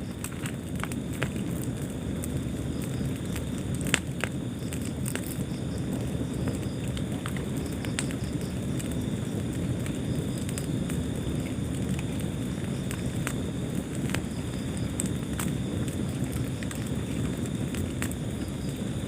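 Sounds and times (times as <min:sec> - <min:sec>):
low rumble of flames: 0:00.0 - 0:19.0
wood fire crackling and popping: 0:00.0 - 0:19.0.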